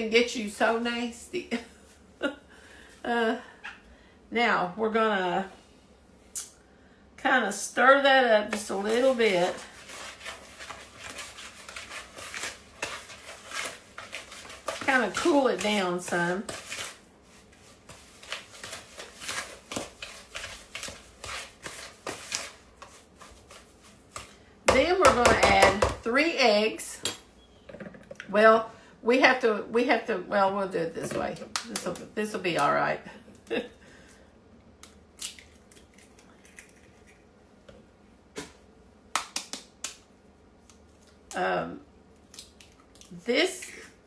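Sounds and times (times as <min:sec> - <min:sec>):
utensil scraping mix in a bowl: 0:08.3 - 0:25.9.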